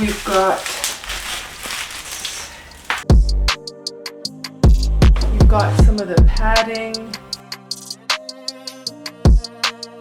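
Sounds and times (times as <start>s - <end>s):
packaging rustling: 0.0s - 3.0s
hip-hop beat: 4.6s - 8.3s.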